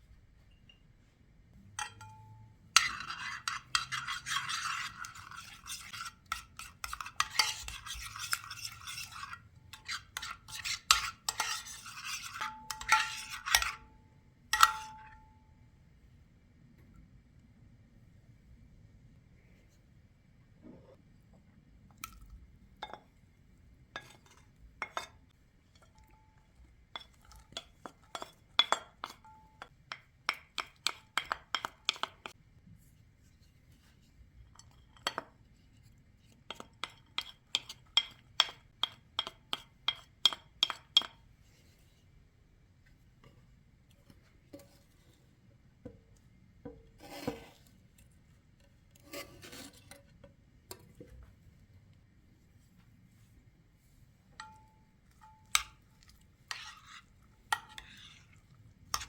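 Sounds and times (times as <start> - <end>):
utensil clinking against glass bowl: 1.8 - 13.9, 25.8 - 32.3, 54.4 - 59.0.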